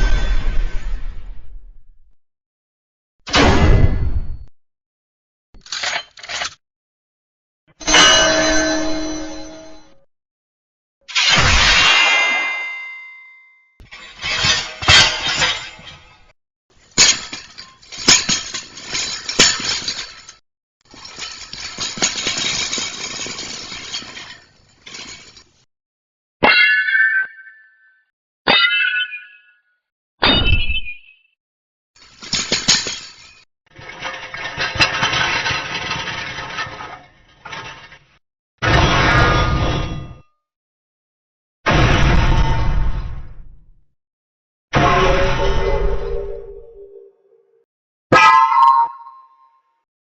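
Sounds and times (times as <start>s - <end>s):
metal clattering: 13.9s - 25.6s, 32.0s - 38.2s.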